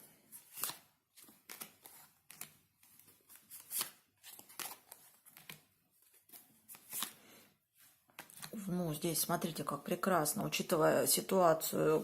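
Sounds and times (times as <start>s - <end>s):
cards being shuffled: 0.3s - 7.2s, 7.8s - 8.6s.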